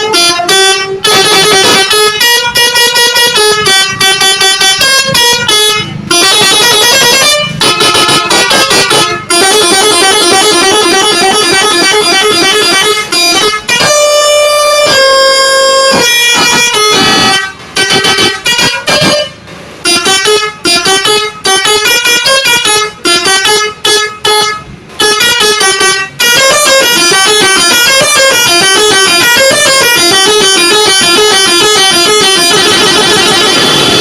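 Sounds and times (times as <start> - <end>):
bus air horn playing a tune: 0.0 - 34.0.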